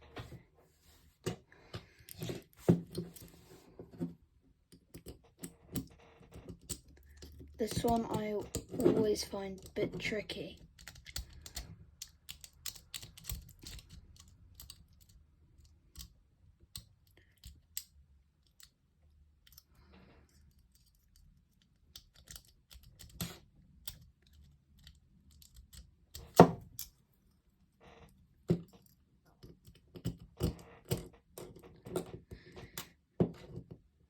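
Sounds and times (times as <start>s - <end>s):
lock pick clicks and scrapes: 1.7s - 4.1s, 4.7s - 9.0s, 10.6s - 18.8s, 19.4s - 27.0s, 27.8s - 33.7s.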